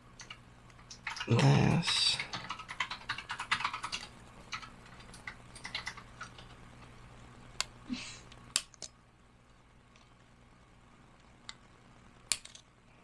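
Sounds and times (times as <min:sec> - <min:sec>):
plastic parts clicking together: 0:12.3 - 0:12.7.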